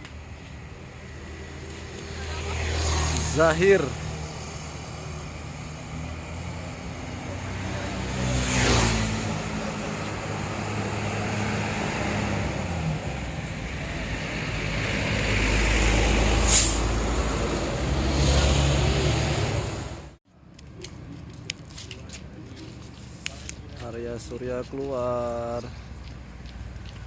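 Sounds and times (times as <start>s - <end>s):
bus engines running: 0.0s - 20.2s
air-brake hiss: 16.2s - 17.0s.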